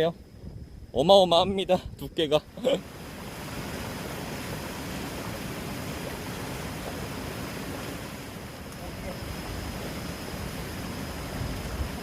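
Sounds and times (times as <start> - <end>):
strong wind: 0.0 - 12.0.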